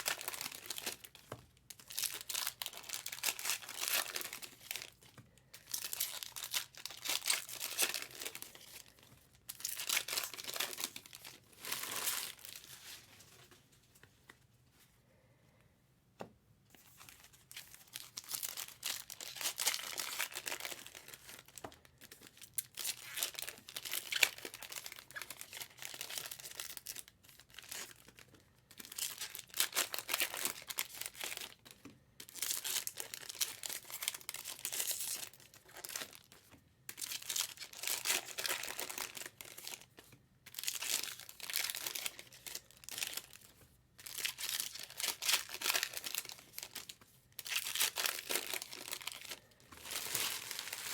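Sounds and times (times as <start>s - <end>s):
card pack wrappers tearing: 22.6s - 27.9s, 40.6s - 50.9s.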